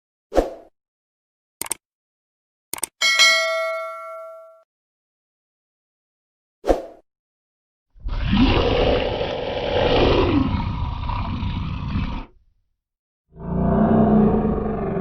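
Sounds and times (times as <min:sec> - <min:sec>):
monster growl: 0:08.0 - 0:12.4, 0:13.3 - 0:15.0.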